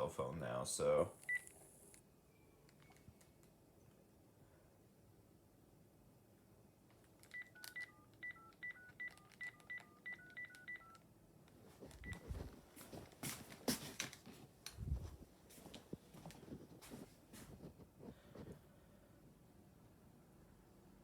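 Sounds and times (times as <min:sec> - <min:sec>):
touch-tone keypad beeps: 0:01.3 - 0:01.5, 0:07.3 - 0:11.0, 0:12.0 - 0:12.2
clicks and knocks handling phone: 0:06.9 - 0:11.0, 0:11.8 - 0:13.1.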